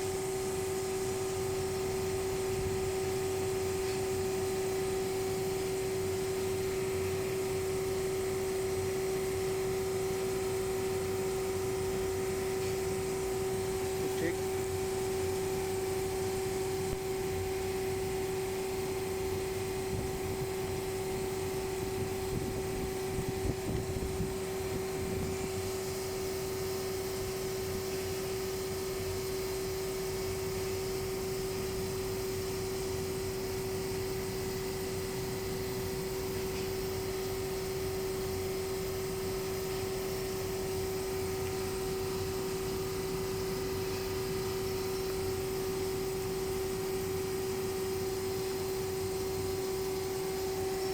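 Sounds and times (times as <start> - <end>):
steady motor hum: 0.0 - 50.9.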